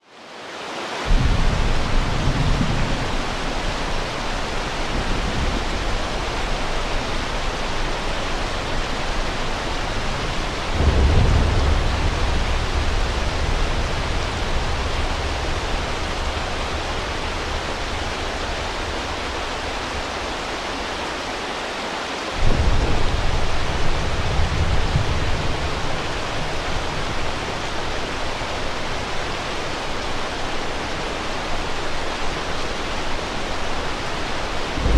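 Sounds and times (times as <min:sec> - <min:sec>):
heavy rain hiss: 0:00.0 - 0:34.9
thunder rolling: 0:01.1 - 0:20.6, 0:22.4 - 0:29.7, 0:34.4 - 0:34.9.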